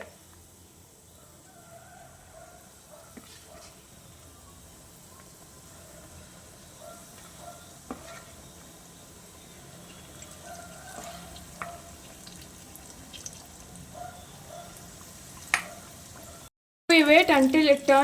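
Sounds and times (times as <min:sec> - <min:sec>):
batter sizzling in hot oil: 0:00.0 - 0:18.0
oil crackling: 0:09.8 - 0:16.4.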